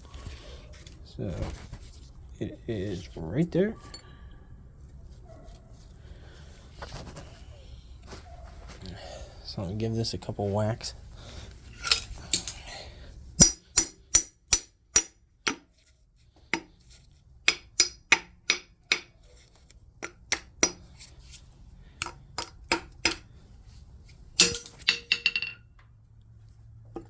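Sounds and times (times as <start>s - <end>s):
hammer striking steel rod: 13.4s - 15.7s, 17.5s - 19.1s, 20.0s - 20.8s, 22.0s - 23.3s, 24.4s - 25.6s.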